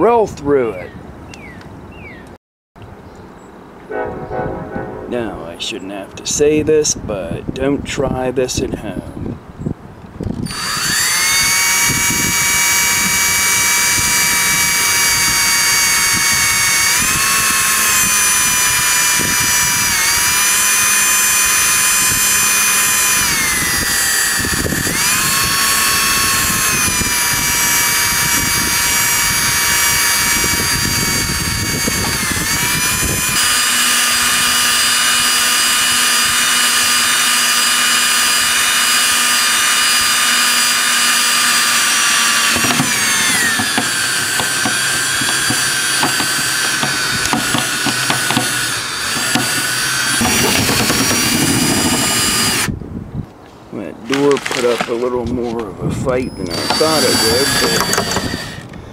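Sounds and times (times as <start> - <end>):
power drill whining: 10.3 - 52.8, 54.1 - 55.0, 56.1 - 58.8
scraping and grinding: 42.4 - 52.6, 54.1 - 55.1.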